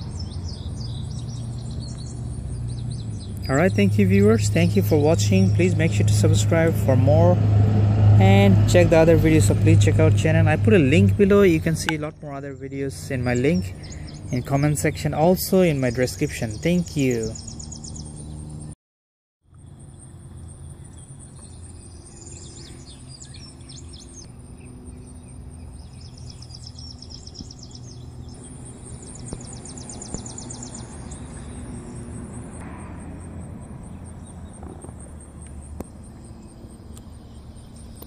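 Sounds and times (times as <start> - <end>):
steady low hum: 0.0 - 18.8, 19.5 - 38.0
high-pitched pulsed chirping: 19.6 - 38.0.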